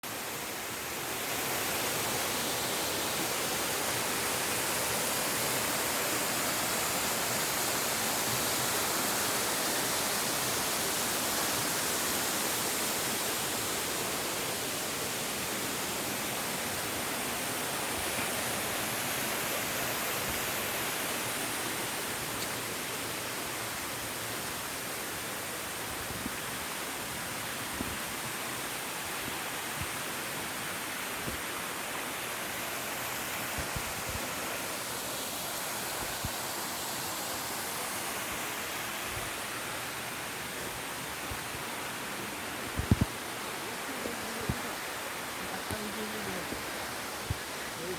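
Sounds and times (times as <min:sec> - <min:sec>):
waterfall rushing: 0:00.0 - 0:47.9.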